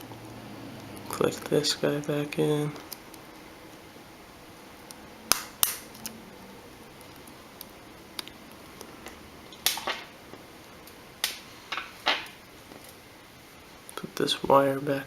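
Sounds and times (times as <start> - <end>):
sharp clicks of phone parts snapping: 5.3 - 6.1.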